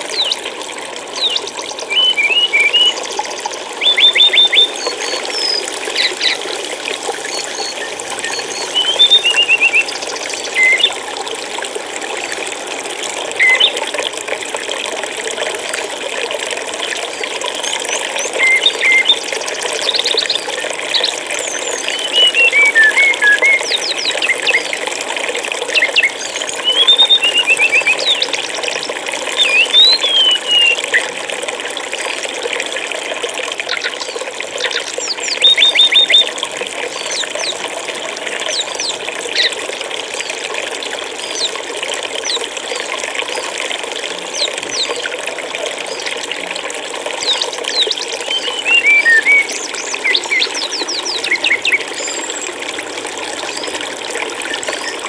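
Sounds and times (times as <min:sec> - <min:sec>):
stream water flowing: 0:00.0 - 0:55.0
songbirds chirping and whistling: 0:00.1 - 0:00.5, 0:01.1 - 0:06.4, 0:07.2 - 0:11.0, 0:13.4 - 0:13.8, 0:17.2 - 0:24.7, 0:25.6 - 0:31.1, 0:33.6 - 0:36.3, 0:38.5 - 0:39.6, 0:47.2 - 0:52.6.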